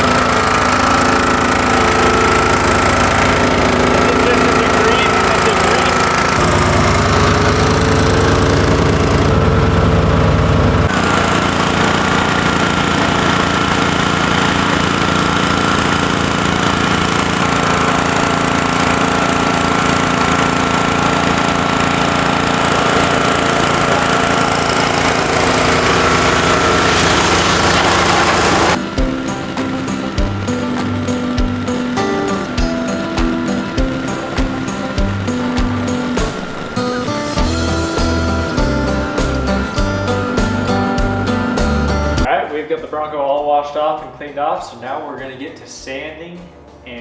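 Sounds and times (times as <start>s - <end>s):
pressure washer motor drone: 0.0s - 42.3s
water spray hissing: 19.0s - 42.2s.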